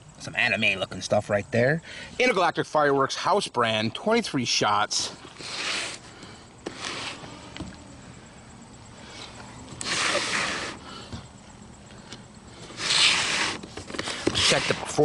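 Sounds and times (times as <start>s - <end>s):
rustling scraping sounds: 5.1s - 7.6s, 12.5s - 15.0s.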